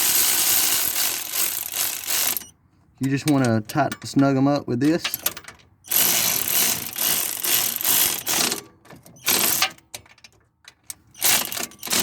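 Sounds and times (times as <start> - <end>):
power ratchet rattling: 0.0 - 2.5, 5.1 - 8.6, 9.2 - 9.7, 11.2 - 12.0.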